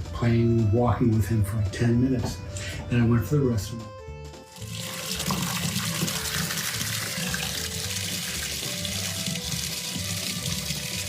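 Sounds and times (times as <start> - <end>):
water running: 4.5 - 11.0.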